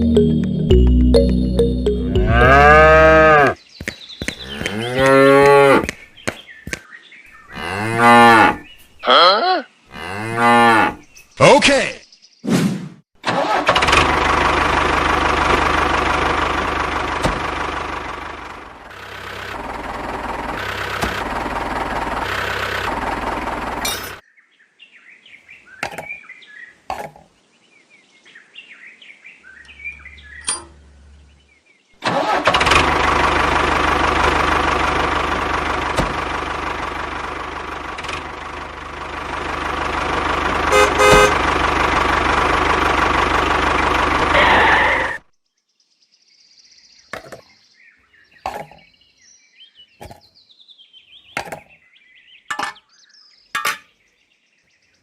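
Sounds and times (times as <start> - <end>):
cattle mooing: 2.2 - 3.6, 4.5 - 5.9, 7.6 - 11.0.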